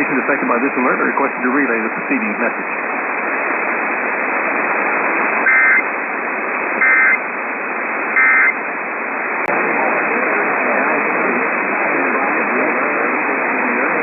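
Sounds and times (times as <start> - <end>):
radio static: 0.0 - 8.6, 9.3 - 14.0
digital data tone bursts: 5.5 - 5.8, 6.8 - 7.2, 8.2 - 8.6.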